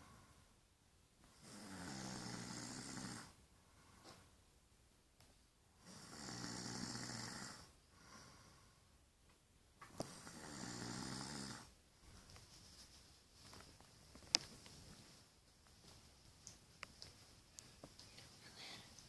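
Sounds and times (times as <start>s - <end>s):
faint breath: 0.0s - 0.6s, 3.6s - 4.4s, 7.5s - 9.0s
man snoring: 1.4s - 3.4s, 5.8s - 7.7s, 10.0s - 11.7s.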